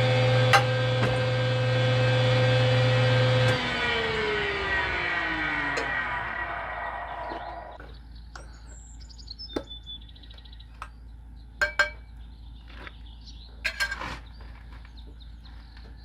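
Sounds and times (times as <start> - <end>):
birds chirping: 3.9 - 16.0
clinks and knocks of handling: 11.6 - 12.1, 13.6 - 14.2.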